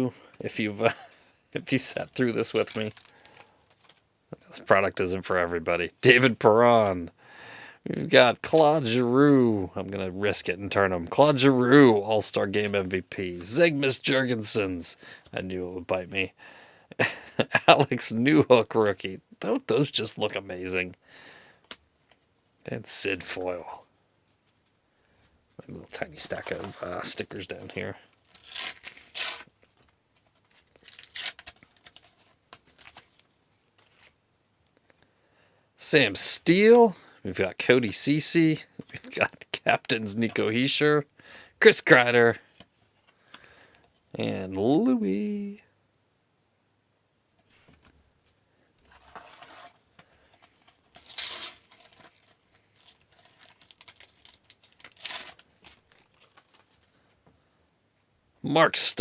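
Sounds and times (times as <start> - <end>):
paper tearing and rustling: 1.7 - 4.0, 26.2 - 34.2, 48.9 - 56.8.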